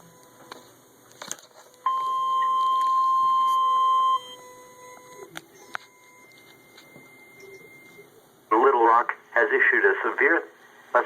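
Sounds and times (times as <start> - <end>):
steady alarm tone: 1.8 - 8.1.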